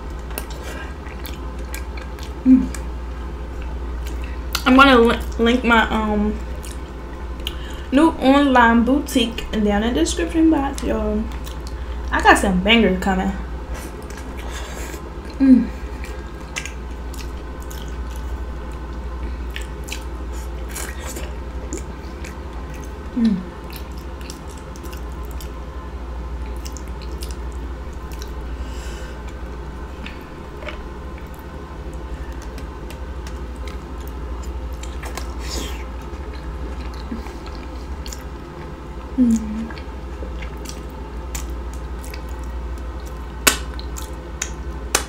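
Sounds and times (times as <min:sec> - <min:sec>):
chewing and mouth smacking: 0:00.0 - 0:05.4, 0:06.4 - 0:07.6, 0:10.8 - 0:12.1, 0:13.8 - 0:25.6, 0:26.4 - 0:28.5, 0:29.2 - 0:45.0
steady low hum: 0:00.0 - 0:45.0
person humming mm: 0:02.4 - 0:02.8, 0:15.3 - 0:15.8, 0:23.1 - 0:23.6, 0:39.1 - 0:39.8.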